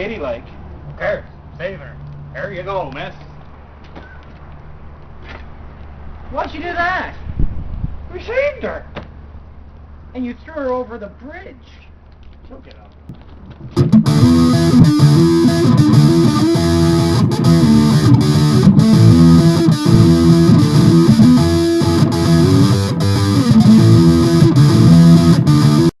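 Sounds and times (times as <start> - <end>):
distorted electric guitar music: 13.1 - 26.0.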